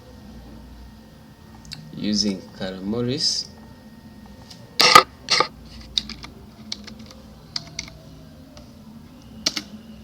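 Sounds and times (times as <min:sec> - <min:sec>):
computer keyboard keystrokes: 0:09.4 - 0:09.7.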